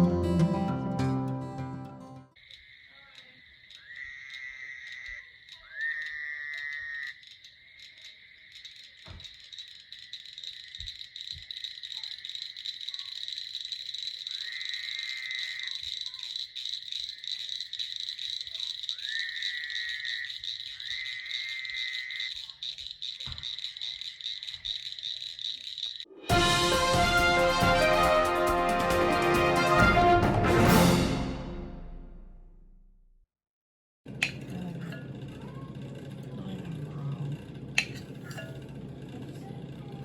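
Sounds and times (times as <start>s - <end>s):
chorus of frogs and insects: 2.3s - 26.2s
frog trilling call: 2.3s - 26.2s.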